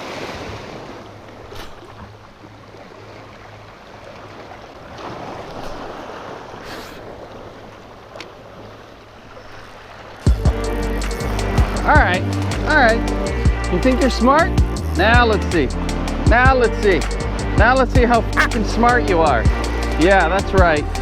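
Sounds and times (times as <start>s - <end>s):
waves washing onto beach: 0.0s - 10.3s.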